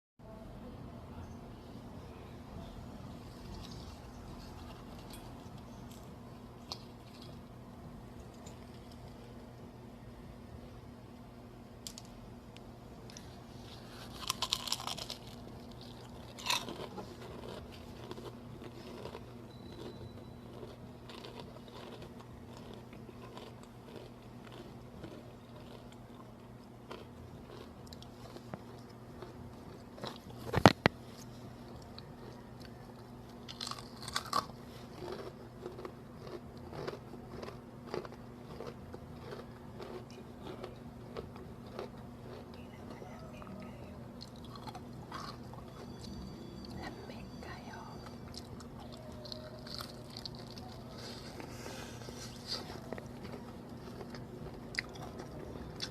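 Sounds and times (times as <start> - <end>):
crunching fried chicken: 13.0 - 47.5, 48.3 - 55.9
chewing: 13.1 - 55.9.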